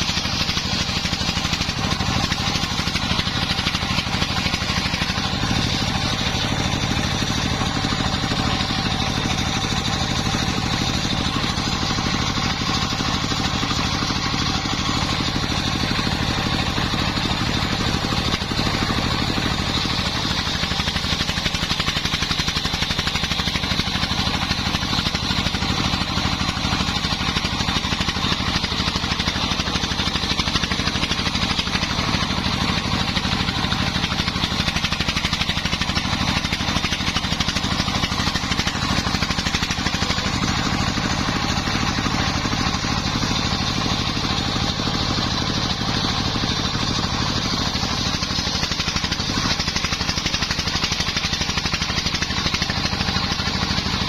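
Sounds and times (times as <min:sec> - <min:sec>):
engine running steadily: 0:00.0 - 0:54.0.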